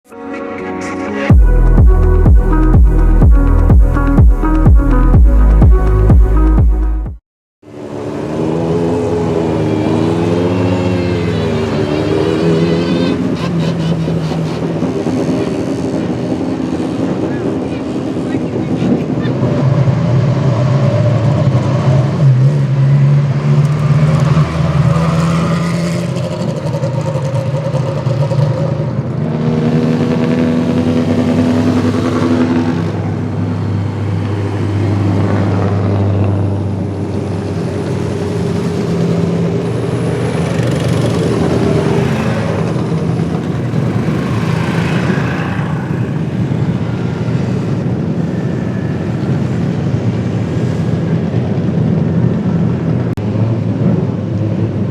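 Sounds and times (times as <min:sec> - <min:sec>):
race car engines passing: 0:07.7 - 0:51.0.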